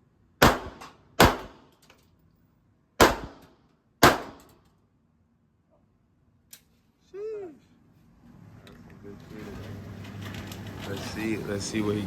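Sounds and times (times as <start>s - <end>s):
handgun shots with echo: 0.4s - 1.8s, 3.0s - 4.6s.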